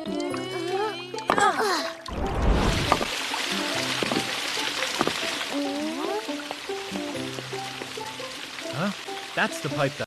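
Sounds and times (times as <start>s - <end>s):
light cartoon music: 0.0s - 10.0s
water spraying from burst pipe: 2.0s - 10.0s.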